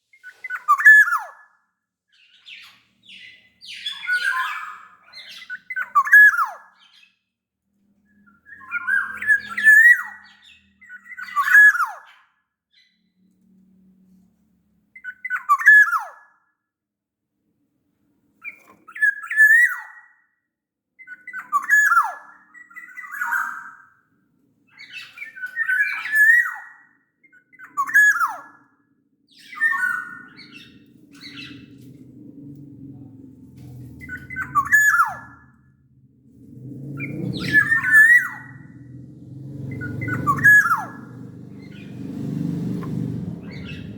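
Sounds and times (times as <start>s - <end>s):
bird whistling song: 0.1s - 7.2s, 8.1s - 13.2s, 15.0s - 16.3s, 18.4s - 20.2s, 21.0s - 23.9s, 24.7s - 28.7s, 29.3s - 32.9s, 33.7s - 35.8s, 36.4s - 43.9s
low steady hum: 30.9s - 43.9s.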